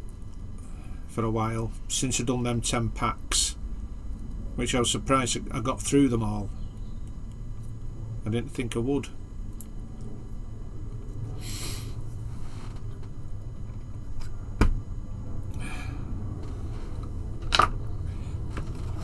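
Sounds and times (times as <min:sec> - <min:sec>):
low room hum: 0:00.0 - 0:19.0
short hissy puffs: 0:11.4 - 0:12.7
plastic parts clicking and tapping: 0:17.0 - 0:17.9.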